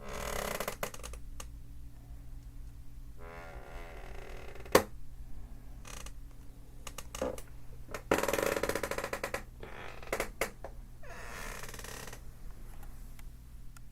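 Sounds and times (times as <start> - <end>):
chair creaking: 0.0 - 1.2, 3.2 - 4.9, 5.8 - 6.2, 6.8 - 12.2
steady low hum: 0.0 - 13.9.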